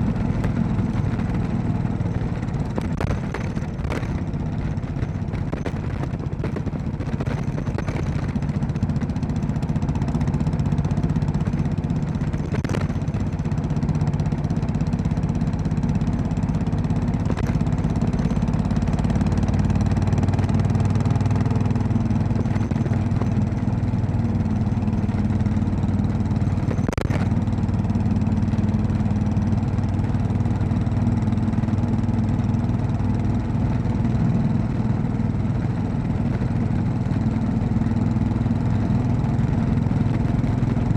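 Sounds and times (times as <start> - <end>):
motorcycle engine running: 0.0 - 40.9
sharp knocks: 2.2 - 8.6, 12.3 - 13.3.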